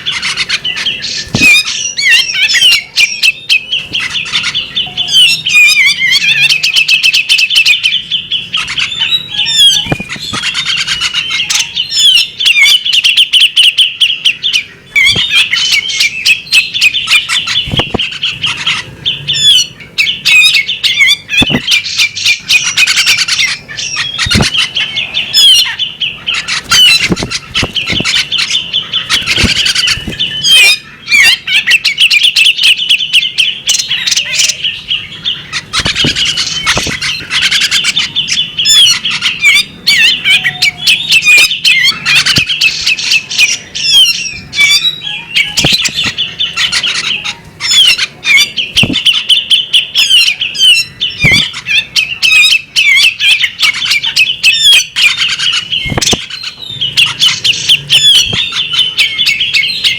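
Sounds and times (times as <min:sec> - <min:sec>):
bird chattering calls: 0:00.0 - 0:59.9
sharp bird clicks: 0:08.6 - 0:11.6, 0:17.1 - 0:18.4, 0:21.3 - 0:23.4, 0:24.0 - 0:24.8, 0:26.4 - 0:30.8, 0:35.6 - 0:37.8, 0:48.8 - 0:49.4, 0:53.7 - 0:59.0.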